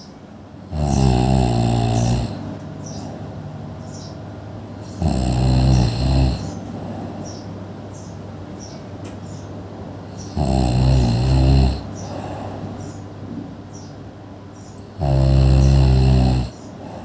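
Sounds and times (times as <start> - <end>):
person snoring: 0.6 - 2.5, 4.7 - 7.1, 10.1 - 12.6, 14.9 - 17.0.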